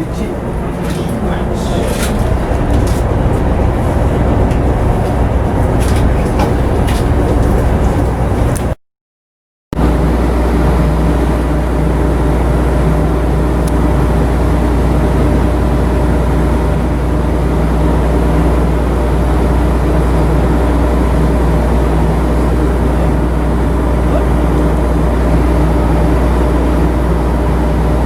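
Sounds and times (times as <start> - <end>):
deep hum: 0.0 - 8.8
ship diesel engine drone: 0.0 - 8.8, 9.8 - 28.0.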